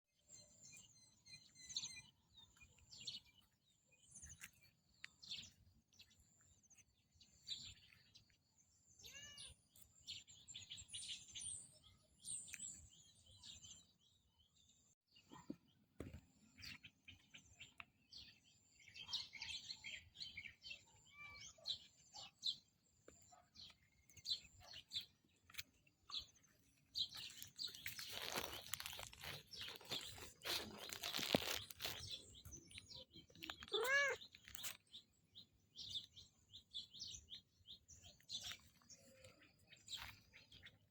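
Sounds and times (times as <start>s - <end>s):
birds chirping: 0.2s - 40.9s
scratchy rustle: 27.1s - 32.6s.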